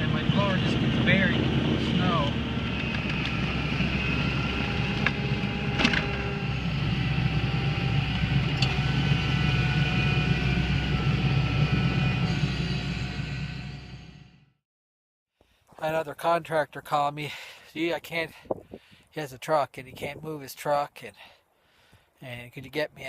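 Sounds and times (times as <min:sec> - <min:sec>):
tractor diesel engine running: 0:00.0 - 0:14.3.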